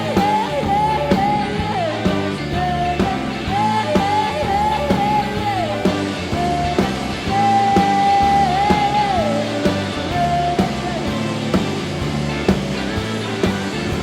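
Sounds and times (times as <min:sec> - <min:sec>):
rock song with singing: 0:00.0 - 0:14.0.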